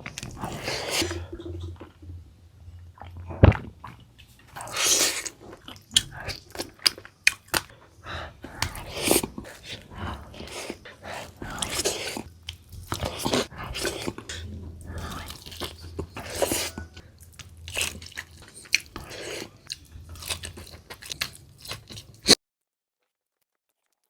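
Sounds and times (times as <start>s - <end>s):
person chewing crunchy food: 0.0s - 1.9s, 3.0s - 22.4s
low steady hum: 0.0s - 4.6s, 7.7s - 21.5s.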